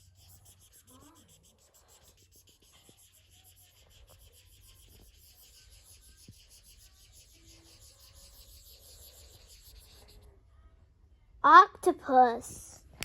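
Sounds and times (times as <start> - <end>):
marker scribbling on paper: 0.0 - 10.3.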